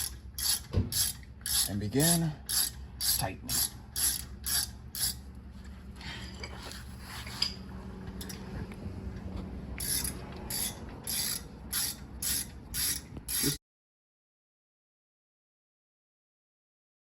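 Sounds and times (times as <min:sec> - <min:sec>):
ratchet wrench clicking: 0:00.0 - 0:05.2, 0:09.8 - 0:13.6.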